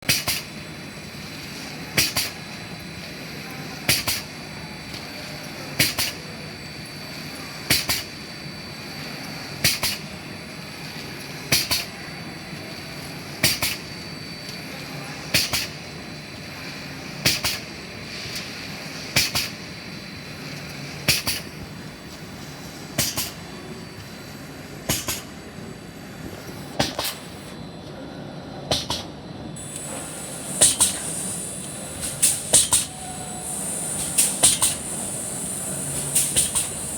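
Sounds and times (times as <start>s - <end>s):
bag cutting machine humming: 29.6s - 36.9s
sharp machine clacks: 29.6s - 36.9s.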